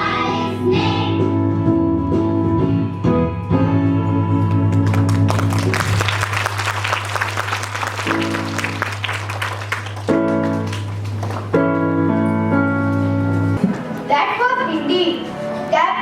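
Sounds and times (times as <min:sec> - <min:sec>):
keyboard chords: 0:00.0 - 0:16.0
audience clapping: 0:04.5 - 0:11.6.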